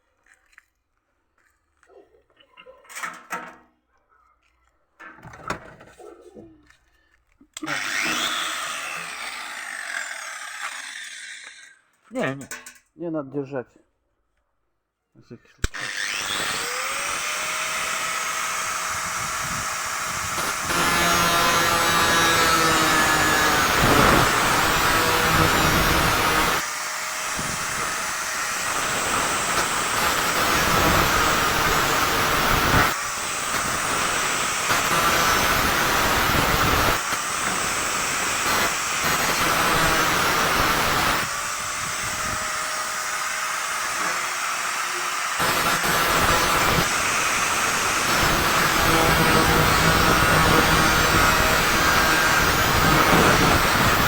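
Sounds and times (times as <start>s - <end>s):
power tool cutting metal pipe: 7.6s - 11.8s, 15.6s - 54.0s.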